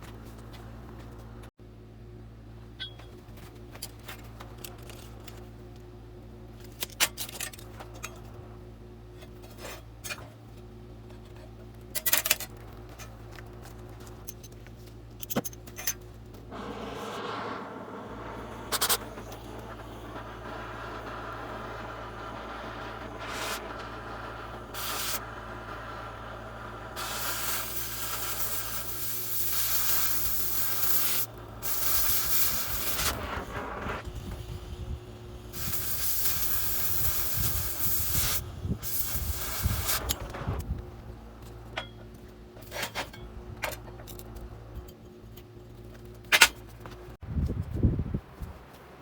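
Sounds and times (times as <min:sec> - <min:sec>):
steady hum: 0:16.3 - 0:42.7
arc welding crackle: 0:16.5 - 0:41.7.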